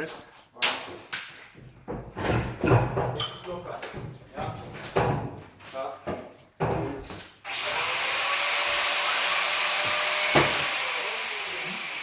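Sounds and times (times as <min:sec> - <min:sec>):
power tool grinding steel: 0:07.5 - 0:12.0
sharp knock: 0:10.3 - 0:10.7.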